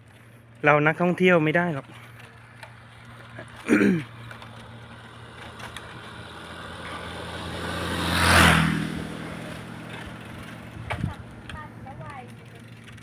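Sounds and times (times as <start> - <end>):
motor vehicle passing: 0.0 - 13.0.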